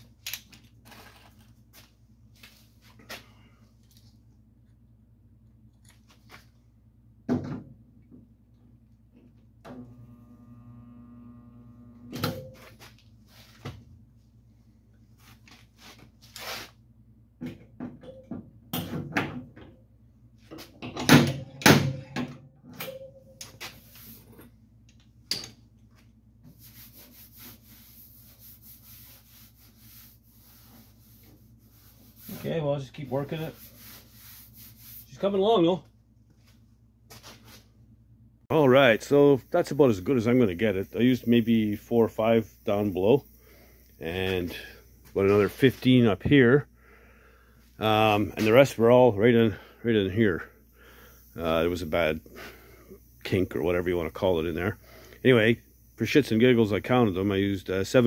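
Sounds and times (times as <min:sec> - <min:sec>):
humming buzz: 0:09.7 - 0:12.6.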